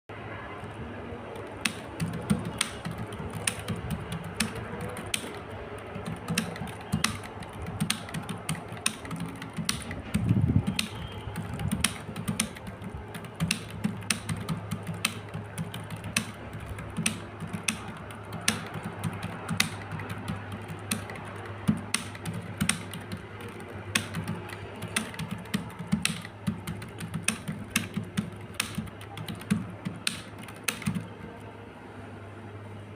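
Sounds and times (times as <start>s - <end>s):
fast typing on keyboard: 1.3s - 31.4s.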